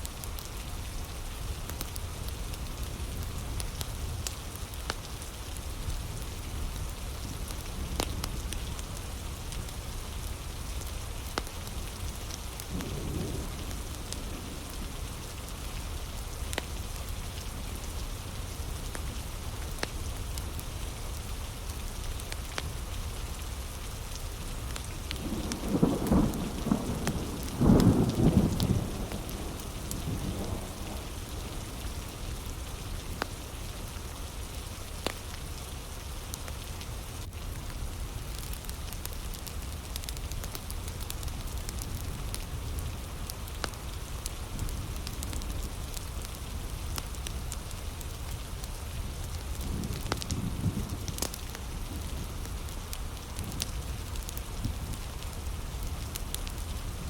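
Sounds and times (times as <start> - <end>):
heavy rain falling: 0.0 - 57.0
low roll of thunder: 25.2 - 33.2.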